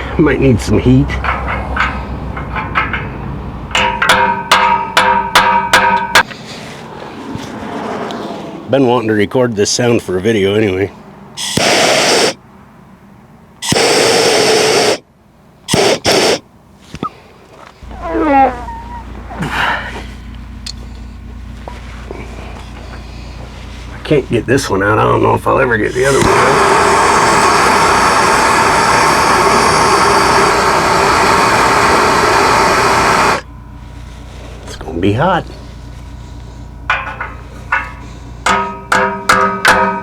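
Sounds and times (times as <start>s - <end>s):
gas torch hissing: 11.4s - 12.4s, 13.6s - 15.0s, 15.7s - 17.1s, 25.8s - 33.5s
pneumatic air hammer bursts: 11.4s - 12.4s, 13.6s - 15.1s, 15.7s - 17.2s, 26.0s - 33.5s.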